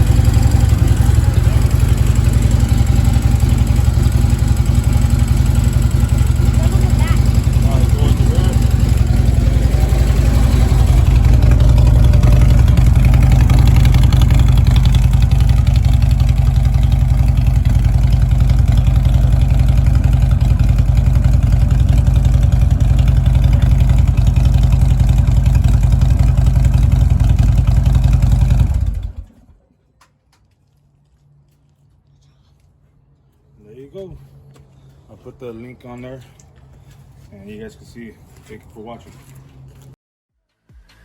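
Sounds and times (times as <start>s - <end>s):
motorcycle engine idling: 0.0s - 29.6s.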